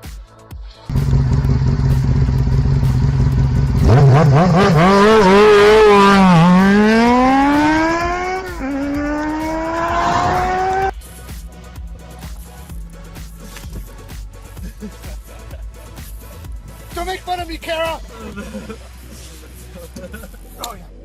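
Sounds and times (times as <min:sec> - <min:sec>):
engine revving and shifting gear: 0:00.9 - 0:10.9.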